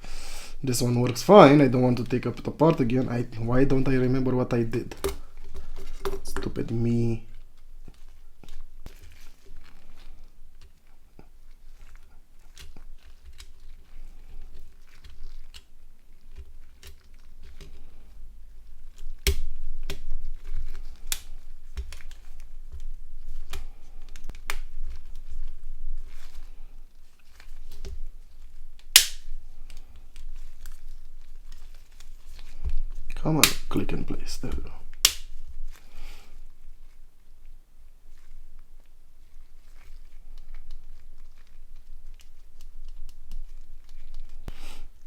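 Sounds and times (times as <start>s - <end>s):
plastic parts clicking and snapping: 4.6s - 6.8s, 18.9s - 24.7s, 27.4s - 32.5s.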